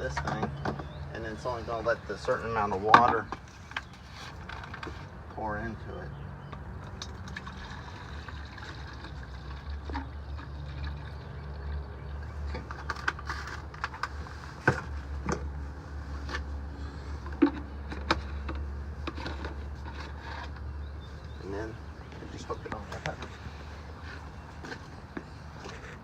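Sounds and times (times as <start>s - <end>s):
water filling plastic bottle: 7.2s - 11.9s.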